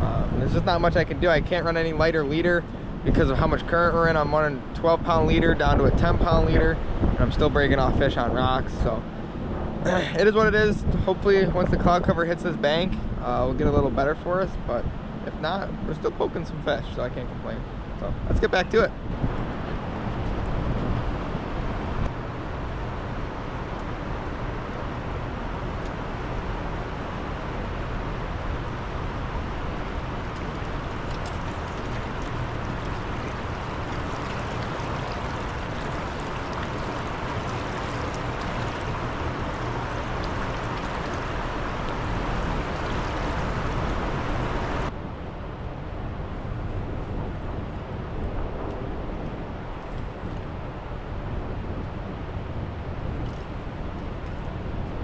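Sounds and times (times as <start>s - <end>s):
fast heavy river current rushing: 30.0s - 44.9s.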